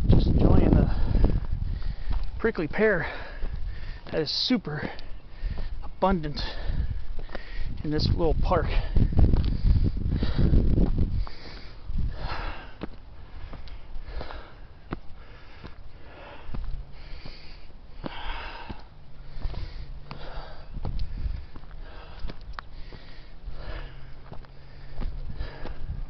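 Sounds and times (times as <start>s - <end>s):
footsteps on trail: 0.3s - 26.0s
person breathing hard: 0.8s - 2.4s, 3.0s - 4.1s, 4.8s - 7.8s, 8.7s - 26.0s.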